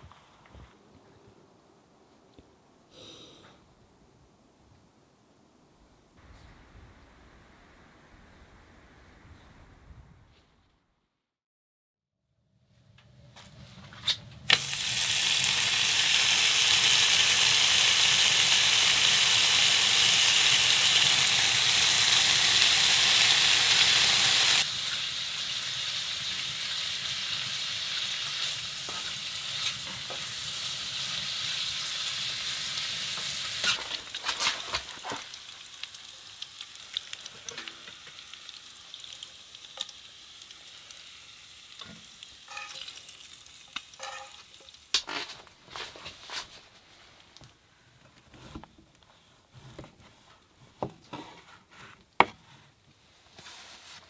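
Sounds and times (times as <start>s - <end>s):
food sizzling in a frying pan: 14.5s - 45.1s.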